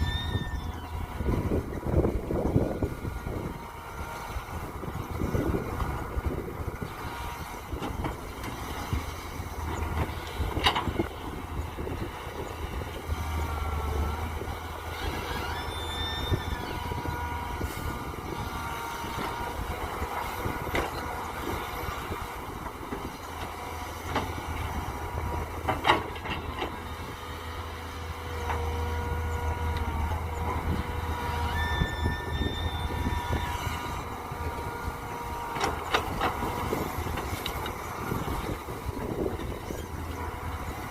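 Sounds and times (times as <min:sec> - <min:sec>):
high whining tones: 0:00.0 - 0:01.5, 0:14.9 - 0:17.3
excavator engine running: 0:00.0 - 0:40.9.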